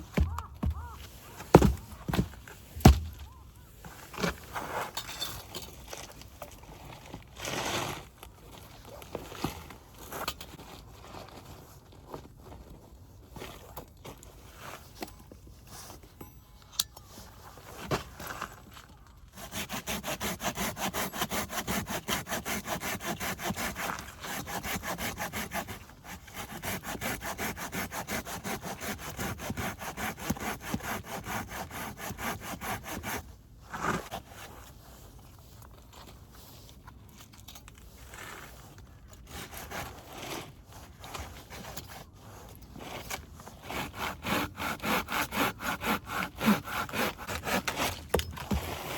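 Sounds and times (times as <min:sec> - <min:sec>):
hand saw cutting wood: 0:00.0 - 0:03.4, 0:19.3 - 0:34.5, 0:39.2 - 0:48.9.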